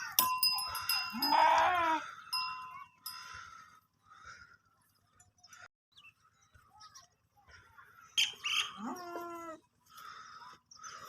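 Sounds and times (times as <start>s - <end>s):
bell-like clink: 0.0s - 1.7s, 2.3s - 3.3s
farm animal bleating: 0.8s - 2.4s, 8.4s - 9.7s.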